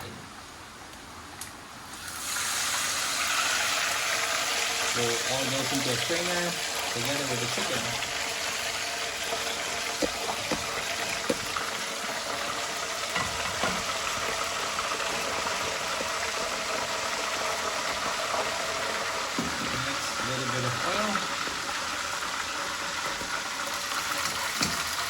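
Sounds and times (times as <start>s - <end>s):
wok cooking hiss: 1.7s - 25.0s.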